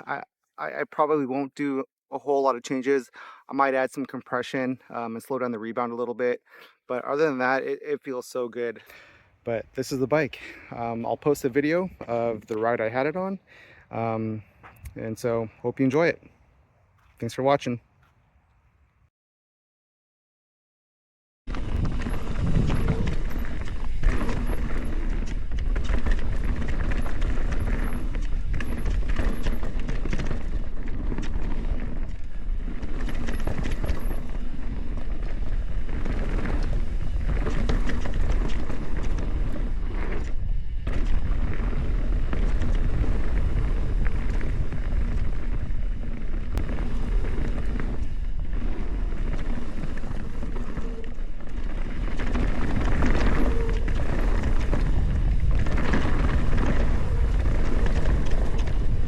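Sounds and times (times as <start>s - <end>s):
bike tyre noise on dirt: 7.0s - 18.2s, 21.5s - 59.0s
bike knocks and rattles: 21.5s - 59.0s
wind rush on microphone: 21.5s - 59.0s.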